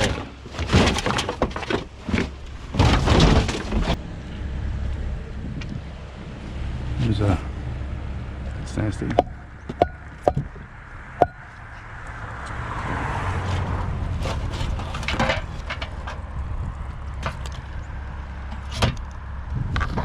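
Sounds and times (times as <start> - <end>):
trash bags rustling and rattling: 0.0 - 4.0
low rumble: 1.9 - 20.0
sharp knocks: 9.0 - 10.6, 11.2 - 11.5.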